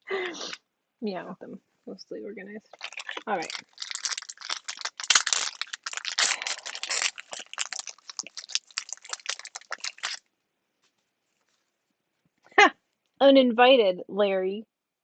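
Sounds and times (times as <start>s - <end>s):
wrapper crinkling and tearing: 2.7s - 10.2s.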